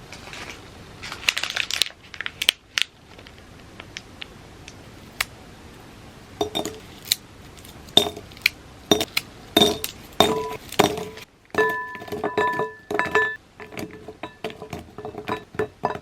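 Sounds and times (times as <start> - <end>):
ringing clinks on a bowl: 11.6 - 13.4.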